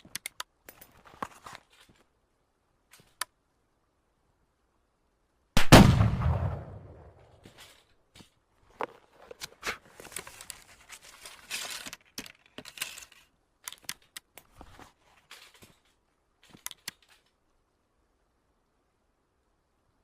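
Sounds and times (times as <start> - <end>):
sharp metallic clicks and scrapes: 9.3 - 14.6, 15.2 - 17.4
papery tearing and rustling: 9.4 - 13.3.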